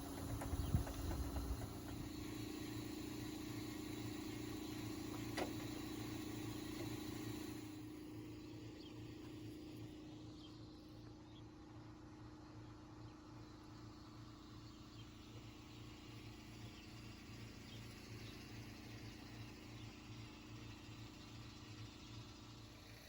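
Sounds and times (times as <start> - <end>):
motor humming: 0.0 - 10.8.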